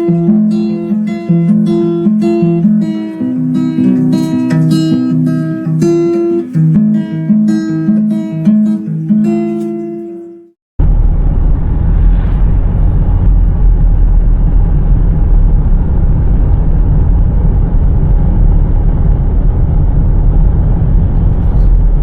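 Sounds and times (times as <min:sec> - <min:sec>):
low outdoor rumble: 0:10.8 - 0:22.0.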